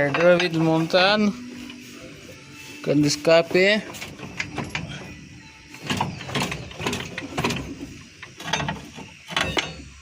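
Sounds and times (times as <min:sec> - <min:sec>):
mechanical clicks and knocks: 0:05.7 - 0:10.0.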